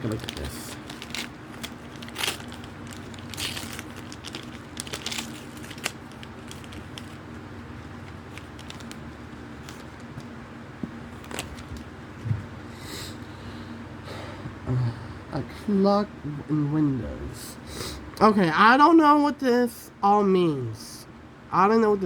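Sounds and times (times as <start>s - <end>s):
packaging crinkling and rustling: 0.0s - 10.4s, 11.1s - 11.9s.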